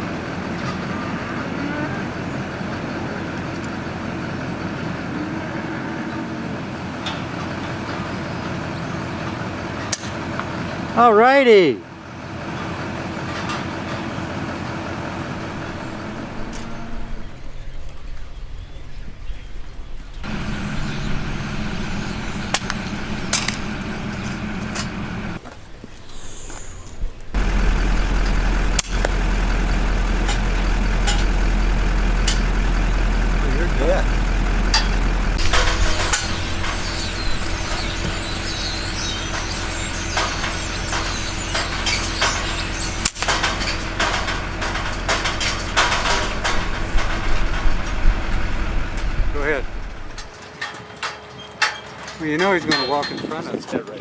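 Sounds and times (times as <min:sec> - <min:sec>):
engine running: 0:00.0 - 0:11.1, 0:11.8 - 0:25.6, 0:27.3 - 0:51.1
high chirps: 0:27.4 - 0:46.8
sharp clicks: 0:34.7 - 0:48.0.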